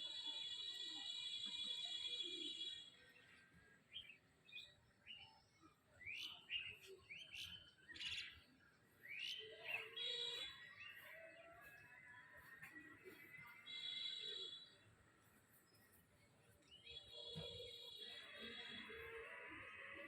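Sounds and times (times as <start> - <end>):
bird chirping: 3.1 - 19.1.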